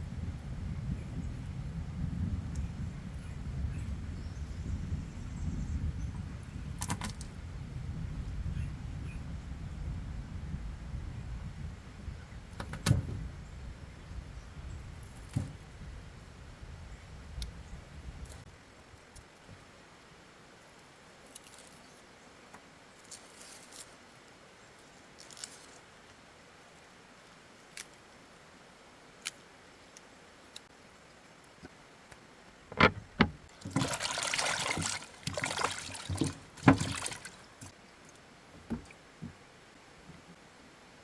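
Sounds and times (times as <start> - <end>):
sharp knocks: 32.7 - 33.5
liquid splashing and trickling: 33.4 - 39.0.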